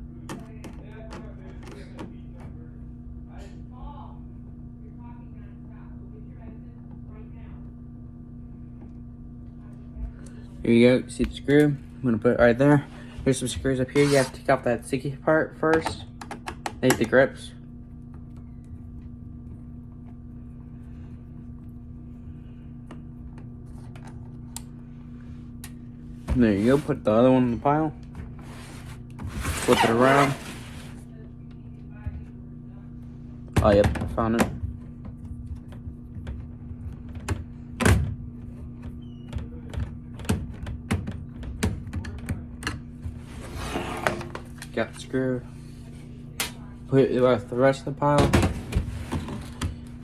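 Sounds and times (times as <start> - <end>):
low electrical hum: 0.0 - 50.0
screwdriver scraping and clicking: 13.9 - 14.4.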